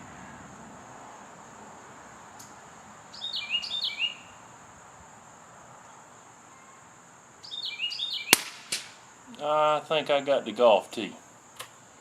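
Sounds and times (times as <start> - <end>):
songbird chirping: 1.2 - 4.8, 5.4 - 12.0
faint click: 2.4 - 2.6
suppressed rifle shot: 8.3 - 9.0.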